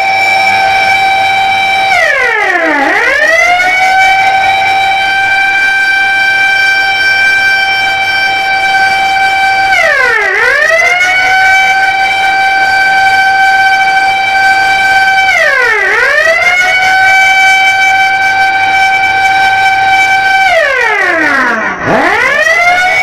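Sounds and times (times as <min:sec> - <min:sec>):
siren steady tone: 0:00.0 - 0:23.0.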